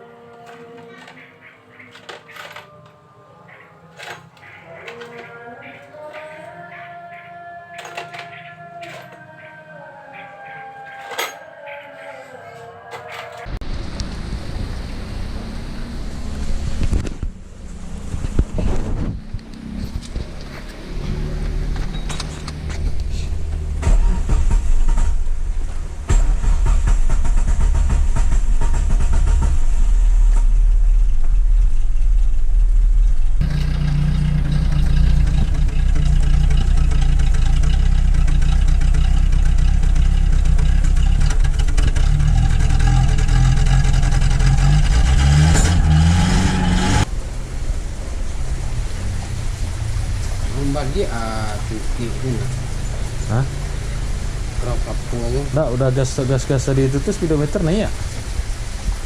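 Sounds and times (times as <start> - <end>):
car engine running and revving: 13.4 - 55.7.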